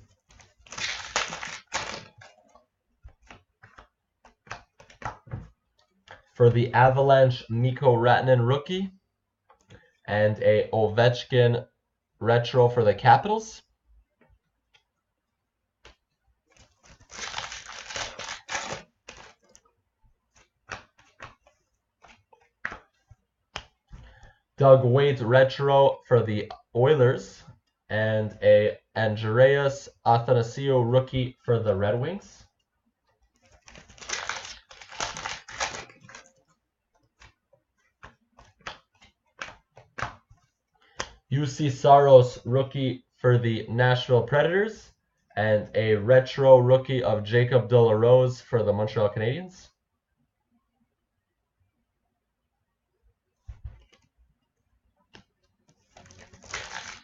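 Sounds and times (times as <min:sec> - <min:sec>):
cards clicking and snapping: 0:00.2 - 0:06.3, 0:15.8 - 0:19.7, 0:20.3 - 0:24.4, 0:33.2 - 0:41.2, 0:53.7 - 0:54.1, 0:55.1 - 0:57.0
wrapper tearing and crinkling: 0:00.4 - 0:02.3, 0:16.6 - 0:19.6, 0:33.5 - 0:36.3, 0:55.9 - 0:57.0.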